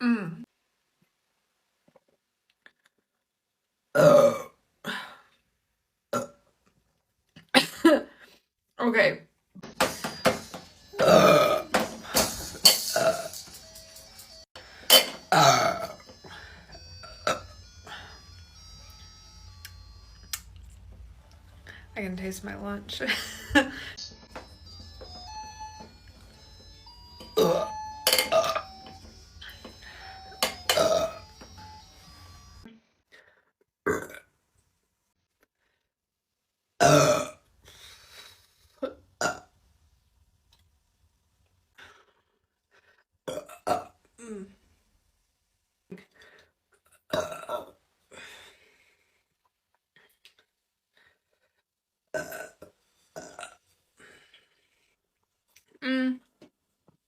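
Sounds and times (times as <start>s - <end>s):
woman burping: 0.0s - 0.5s, 3.9s - 5.2s, 6.1s - 6.4s, 10.9s - 13.3s, 14.9s - 16.1s, 17.0s - 17.5s, 27.4s - 28.7s, 30.7s - 31.2s, 33.8s - 34.2s, 36.8s - 37.4s, 38.8s - 39.5s, 43.3s - 44.5s, 47.0s - 47.8s, 52.2s - 53.6s.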